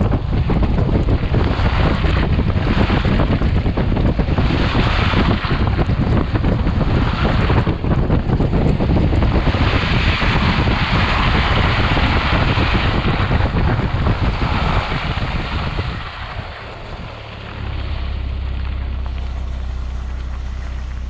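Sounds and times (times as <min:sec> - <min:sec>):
wind buffeting camera: 0:00.0 - 0:21.0
tyres crunching on snow: 0:14.3 - 0:21.0.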